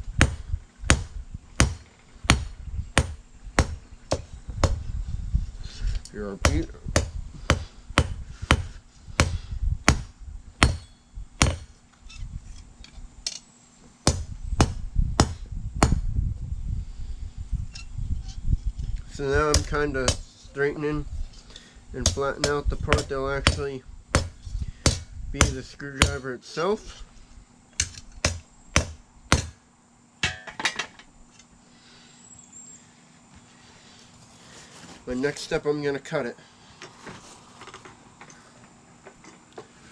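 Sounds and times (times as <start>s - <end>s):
hammer striking steel on anvil: 9.2s - 11.7s, 30.2s - 31.0s.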